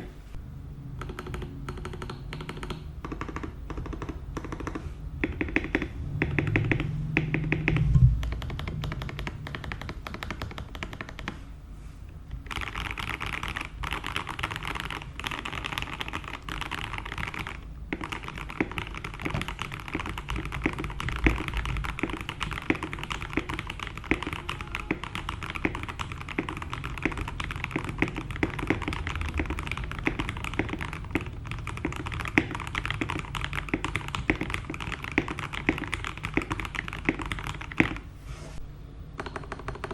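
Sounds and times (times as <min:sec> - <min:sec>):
mechanical keyboard typing: 0:01.0 - 0:11.4, 0:12.4 - 0:38.1, 0:39.2 - 0:39.9.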